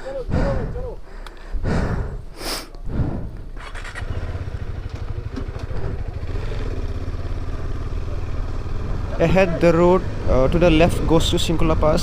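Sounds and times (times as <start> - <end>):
motorcycle engine running: 3.0 - 12.0.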